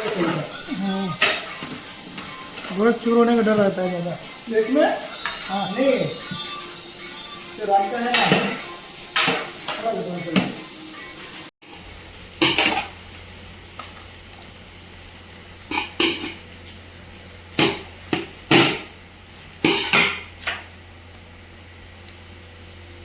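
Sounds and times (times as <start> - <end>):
metal pots and utensils clattering: 0.0 - 6.4, 7.7 - 10.6, 12.4 - 13.0, 15.7 - 16.5, 17.6 - 18.9, 19.6 - 20.6.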